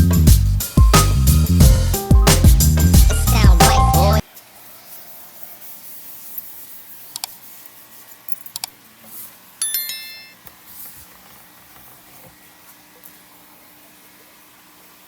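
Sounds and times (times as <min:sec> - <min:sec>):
metallic jingle: 0:09.6 - 0:10.4.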